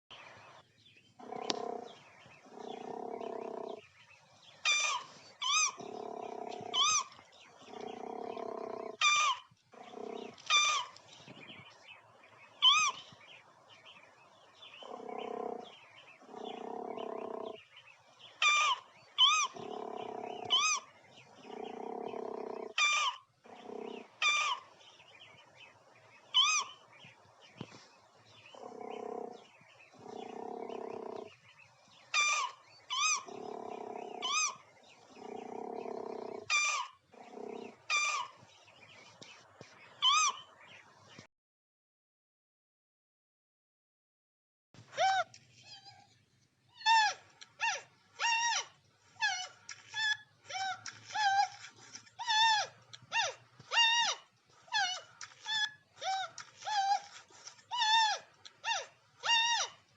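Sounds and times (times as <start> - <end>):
low growl-like animal calls: 1.2 - 11.6, 14.5 - 17.8, 18.4 - 25.4, 27.8 - 39.1
sharp high-pitched animal calls: 8.9 - 9.5, 22.7 - 23.3, 24.2 - 24.7, 32.2 - 34.6, 36.3 - 37.0, 37.9 - 38.4, 46.8 - 59.8.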